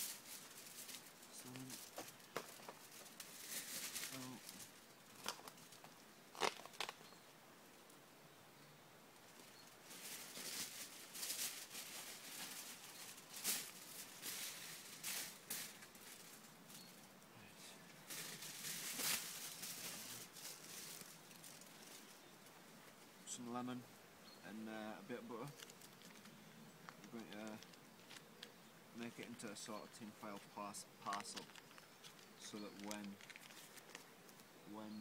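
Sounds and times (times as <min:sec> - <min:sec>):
aluminium foil crinkling: 0:00.0 - 0:07.2, 0:09.4 - 0:17.0, 0:18.0 - 0:22.3, 0:25.4 - 0:29.4, 0:31.0 - 0:34.5.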